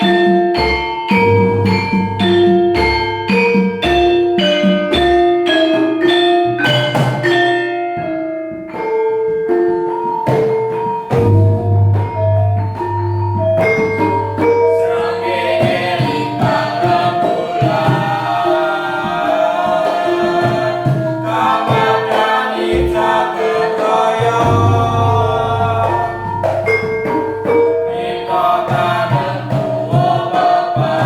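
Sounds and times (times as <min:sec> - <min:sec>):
metallophone melody: 0:00.0 - 0:31.0
voices singing: 0:14.0 - 0:31.0.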